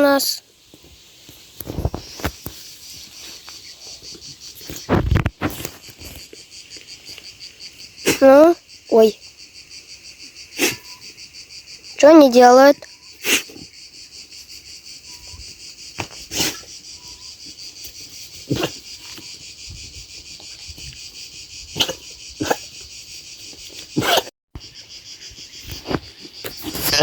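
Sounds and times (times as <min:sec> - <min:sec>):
crickets chirping: 0:00.0 - 0:27.0
sheep sneezing: 0:08.0 - 0:08.2, 0:10.6 - 0:11.0, 0:13.1 - 0:13.7, 0:16.0 - 0:16.7, 0:18.4 - 0:19.0, 0:21.7 - 0:22.8, 0:24.0 - 0:24.3.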